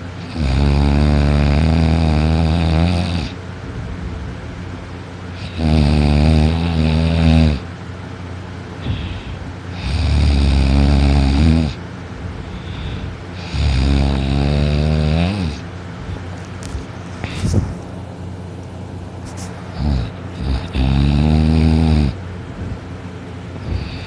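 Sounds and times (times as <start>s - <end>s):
person snoring loudly: 0.2s - 3.4s, 5.4s - 7.6s, 8.8s - 11.8s, 12.6s - 15.6s, 19.8s - 22.2s, 23.6s - 24.0s
quiet breathing: 8.8s - 9.5s, 12.4s - 13.5s.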